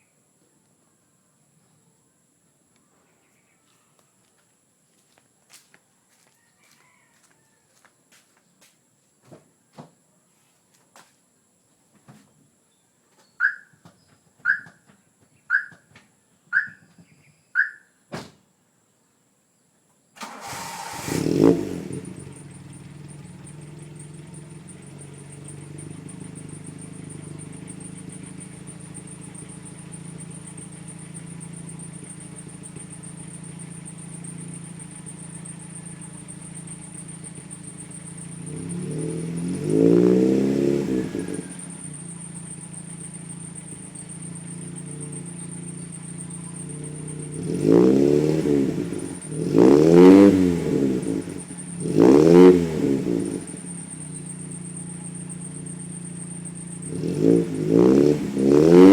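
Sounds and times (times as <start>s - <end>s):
short beeps: 13.4s - 13.8s, 14.5s - 14.8s, 15.5s - 15.8s, 16.6s - 16.9s, 17.6s - 17.9s
car engine revving: 20.2s - 58.9s
car engine starting and idling: 20.2s - 58.9s.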